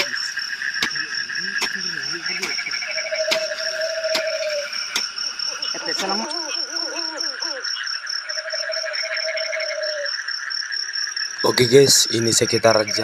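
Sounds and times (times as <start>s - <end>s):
crickets trilling: 0.0s - 13.0s
lower pulsing insect call: 0.0s - 13.0s.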